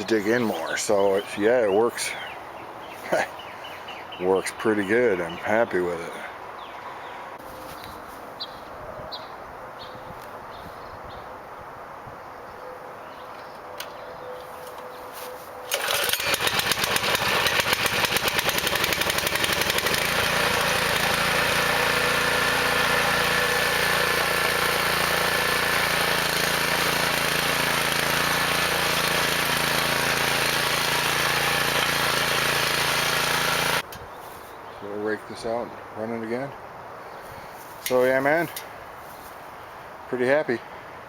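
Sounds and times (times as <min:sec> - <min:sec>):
rototiller engine running: 0:15.7 - 0:33.8.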